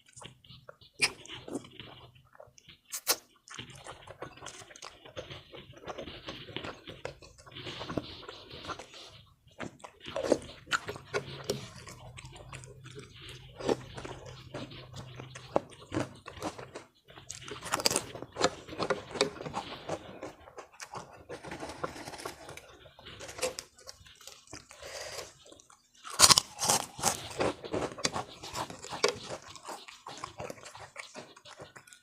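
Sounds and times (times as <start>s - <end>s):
person chewing food: 0.0s - 32.0s
wet mouth clicks: 2.8s - 3.9s
crunchy bites: 9.6s - 32.0s.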